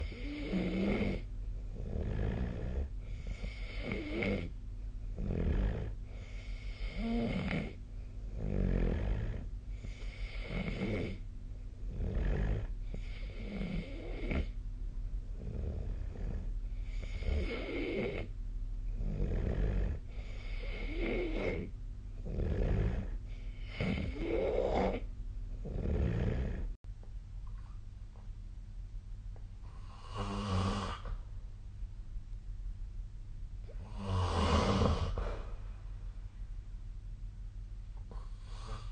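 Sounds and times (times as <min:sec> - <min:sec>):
person snoring: 0:00.0 - 0:04.5, 0:05.2 - 0:11.2, 0:11.9 - 0:14.6, 0:15.4 - 0:18.3, 0:18.9 - 0:26.8, 0:29.6 - 0:31.2, 0:33.7 - 0:35.6, 0:38.0 - 0:38.9.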